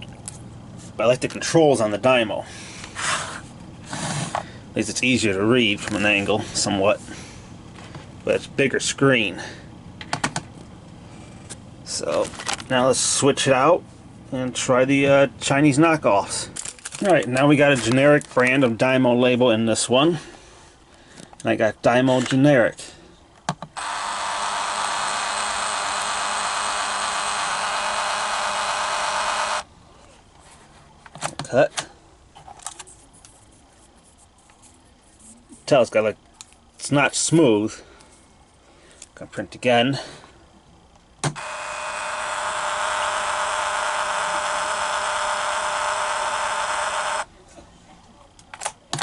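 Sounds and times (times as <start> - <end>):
label maker printing buzz: 23.8 - 29.7, 41.2 - 47.3.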